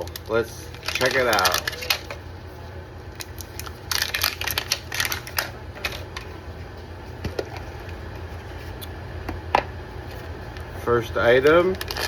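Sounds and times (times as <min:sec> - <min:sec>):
plastic crinkling and clicking: 0:00.0 - 0:02.2, 0:03.2 - 0:06.3, 0:11.7 - 0:12.0.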